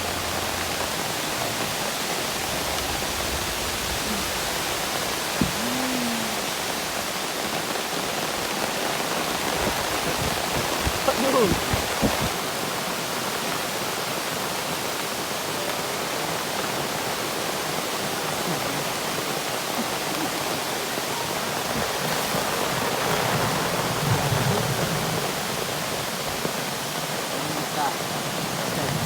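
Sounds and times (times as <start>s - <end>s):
heavy rain pouring: 0.0s - 29.0s
strong wind: 8.4s - 12.4s.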